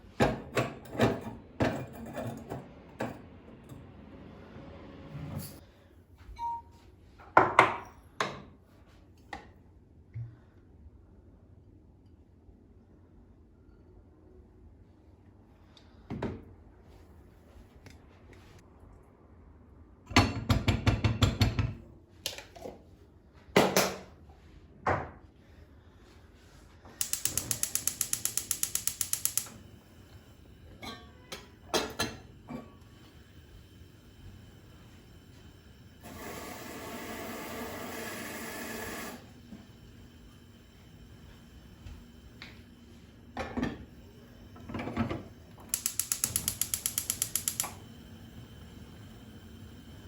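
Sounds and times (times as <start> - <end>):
rapid mechanical clicking: 27.0 - 29.6, 45.7 - 47.8.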